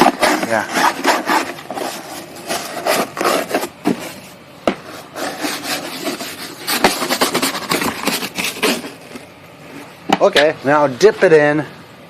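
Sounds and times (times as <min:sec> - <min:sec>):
scrub brush rasping on car door: 0:00.0 - 0:04.2, 0:04.8 - 0:09.2.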